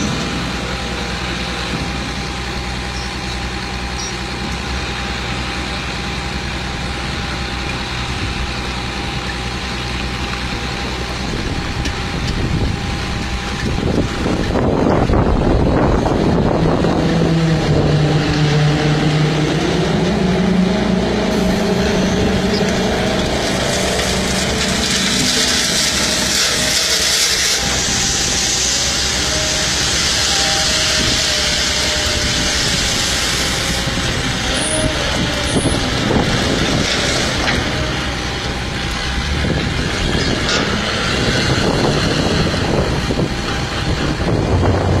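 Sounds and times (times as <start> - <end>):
road traffic rushing: 0.0 - 45.0.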